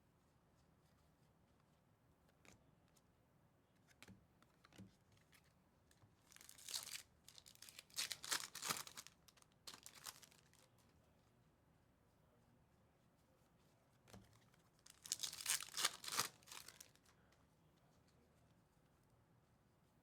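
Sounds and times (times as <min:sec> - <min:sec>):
foil wrapper tearing and crinkling: 0:06.3 - 0:10.7, 0:14.8 - 0:17.0.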